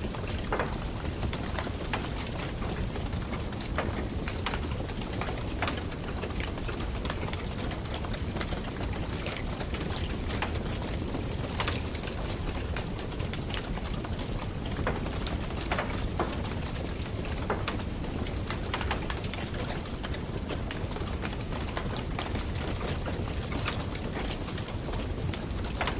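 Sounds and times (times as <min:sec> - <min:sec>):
campfire crackling and popping: 0:00.1 - 0:25.9.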